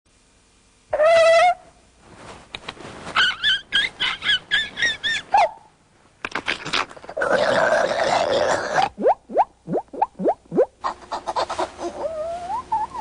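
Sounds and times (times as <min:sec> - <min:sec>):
mouth chirps: 0:08.7 - 0:10.9.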